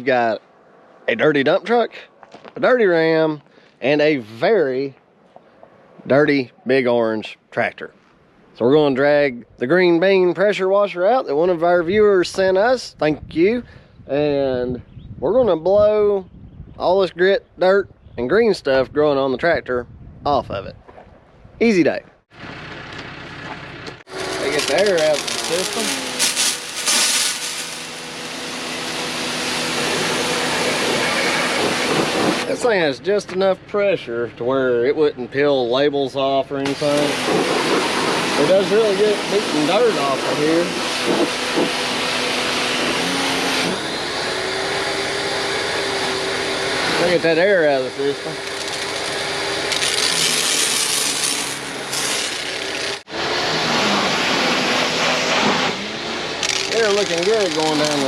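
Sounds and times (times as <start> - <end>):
pressure washer humming: 24.0 - 32.5, 36.7 - 58.0
spray hiss: 24.2 - 29.0.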